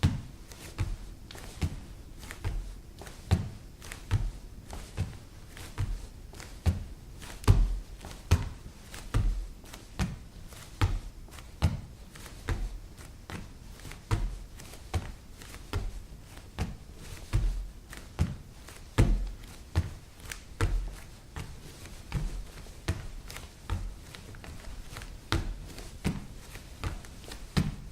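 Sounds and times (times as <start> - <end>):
thuds of jumps on floor: 0.0 - 6.0, 6.6 - 10.2, 10.8 - 11.9, 14.1 - 21.5, 22.1 - 27.9
floor clicking: 0.1 - 27.9.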